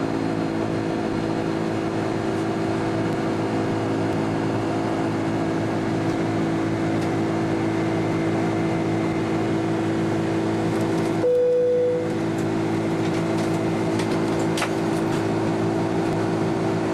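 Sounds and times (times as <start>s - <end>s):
jet engine cabin noise: 0.0s - 16.9s
brief steady tone: 11.2s - 12.2s.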